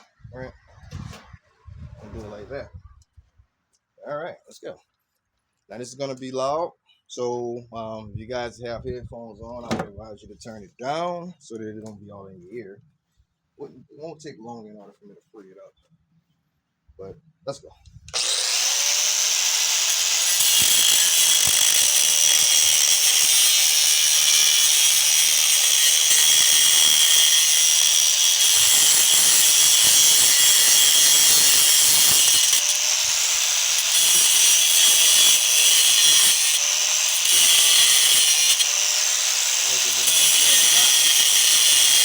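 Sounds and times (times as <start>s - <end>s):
angle grinder cutting metal: 18.1s - 42.0s.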